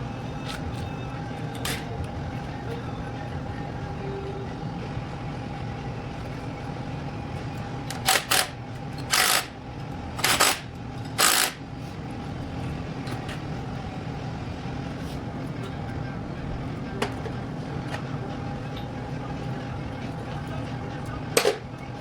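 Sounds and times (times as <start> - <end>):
shop hum: 0.0 - 22.0
air tool bursts: 9.1 - 9.5, 11.2 - 11.6.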